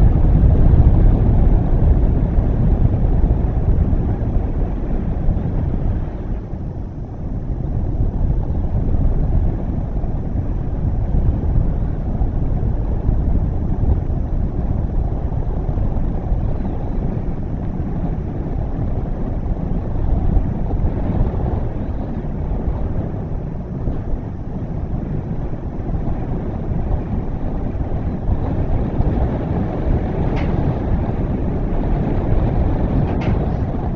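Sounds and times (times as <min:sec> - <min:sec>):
wind buffeting microphone: 0:00.0 - 0:33.9.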